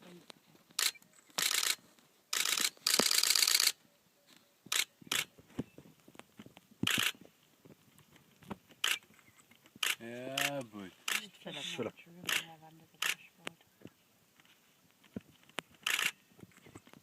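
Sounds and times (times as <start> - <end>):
camera shutters firing: 0.8 - 3.8, 6.8 - 7.2, 15.8 - 16.2.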